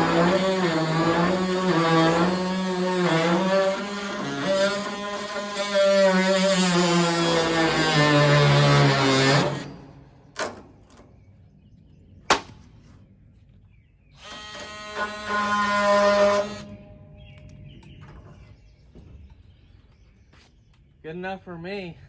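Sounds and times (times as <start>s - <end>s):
cordless power tool motor whining: 0.0s - 10.0s, 14.2s - 16.8s.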